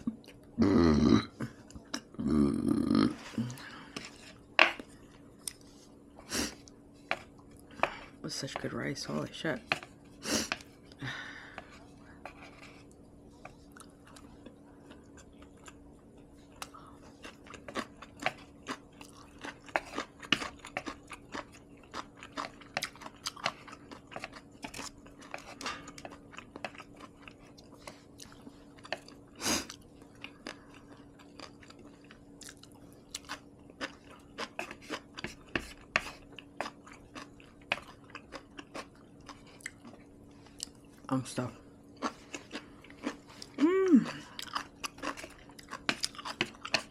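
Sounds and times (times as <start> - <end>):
wet chewing mouth sounds: 12.8 - 41.0, 42.0 - 46.9.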